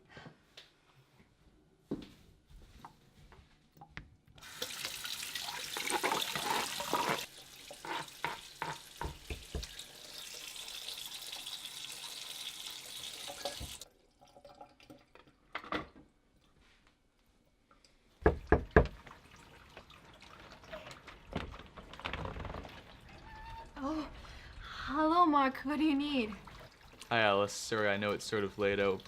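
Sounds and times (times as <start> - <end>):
tap running into sink: 7.8 - 9.8, 18.2 - 20.0.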